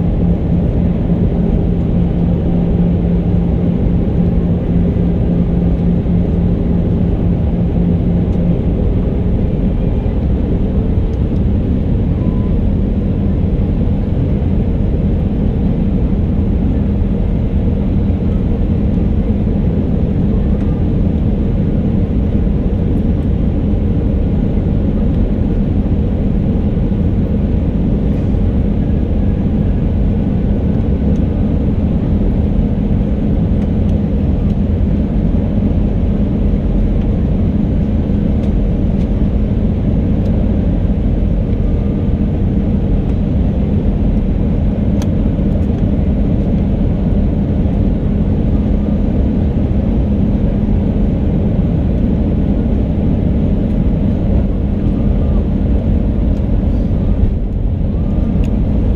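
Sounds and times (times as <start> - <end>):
airliner engine drone: 0.0 - 58.9
steady low hum: 0.0 - 58.9.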